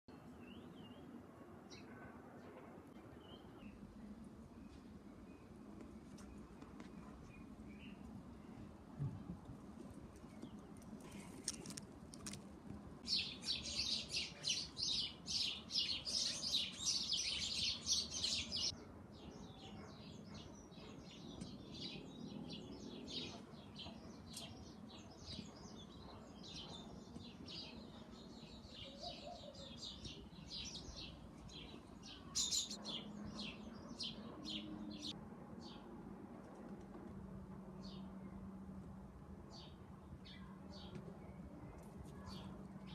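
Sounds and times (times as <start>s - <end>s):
small birds chirping: 9.8s - 12.4s, 13.0s - 35.8s.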